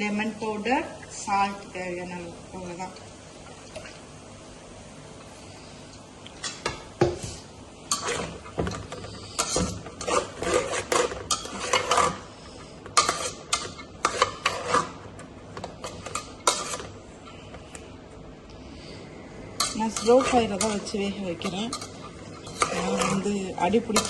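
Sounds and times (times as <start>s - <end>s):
spoon scraping a cooking pot: 7.9s - 15.0s, 15.6s - 17.0s, 19.6s - 24.0s.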